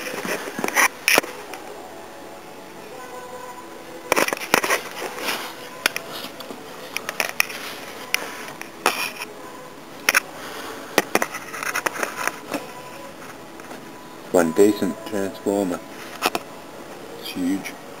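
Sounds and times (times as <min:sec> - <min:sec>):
hard objects clinking and scraping: 0:00.0 - 0:01.6, 0:04.1 - 0:09.3, 0:10.9 - 0:13.9
low steady hiss: 0:00.0 - 0:18.0.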